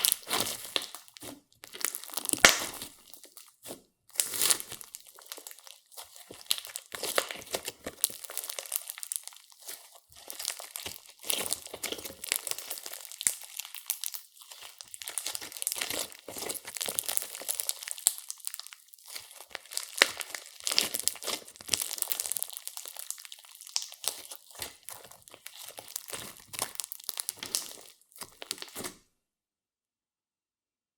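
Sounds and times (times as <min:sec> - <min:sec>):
slime crackling and popping: 0:00.0 - 0:29.0.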